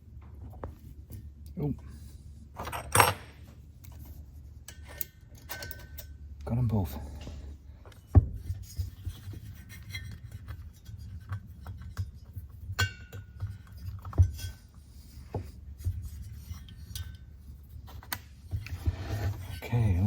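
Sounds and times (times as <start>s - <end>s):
low steady hum: 0.0s - 20.0s
metal valve parts clinking: 2.6s - 3.4s, 4.7s - 6.2s.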